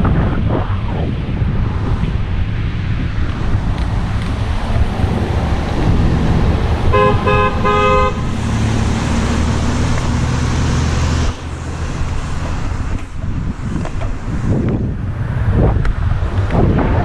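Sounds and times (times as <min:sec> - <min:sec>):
low vehicle rumble: 0:00.0 - 0:17.0
wind rush on microphone: 0:00.0 - 0:17.0
car horn beeps: 0:06.9 - 0:08.4.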